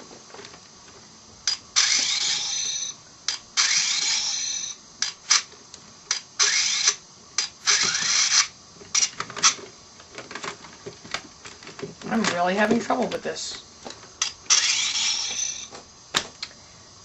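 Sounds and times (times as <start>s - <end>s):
toy clicks: 1.5s - 5.5s, 6.1s - 9.6s, 14.2s - 15.7s
toy motor whirring: 1.5s - 5.5s, 6.1s - 9.6s, 14.2s - 15.7s.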